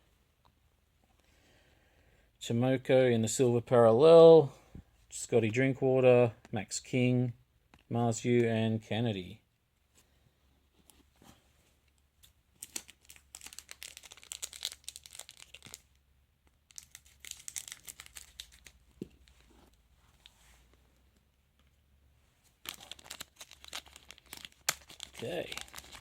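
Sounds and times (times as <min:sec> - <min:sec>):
wrapper crinkling and tearing: 0:12.6 - 0:16.0, 0:16.7 - 0:19.5, 0:22.6 - 0:26.0.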